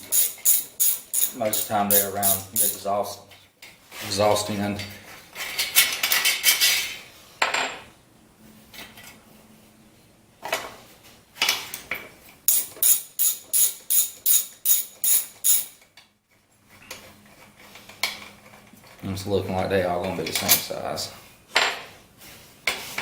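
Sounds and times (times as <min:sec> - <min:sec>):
sharp metallic clicks: 0:00.0 - 0:02.8
metal bolts clinking: 0:00.0 - 0:02.9, 0:12.5 - 0:15.8.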